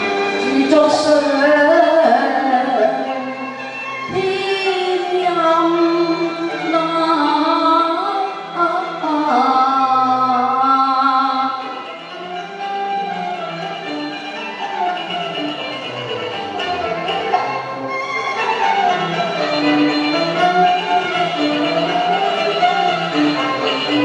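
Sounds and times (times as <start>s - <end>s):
instrumental accompaniment: 0.0s - 24.0s
opera-style singing: 0.4s - 11.8s.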